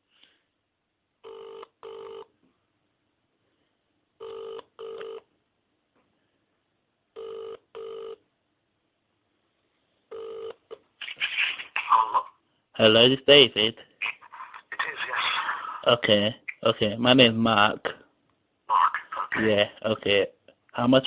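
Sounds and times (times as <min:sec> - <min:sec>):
telephone ringback tone: 0:01.2 - 0:02.3, 0:04.2 - 0:05.3, 0:07.2 - 0:08.2, 0:10.1 - 0:10.6.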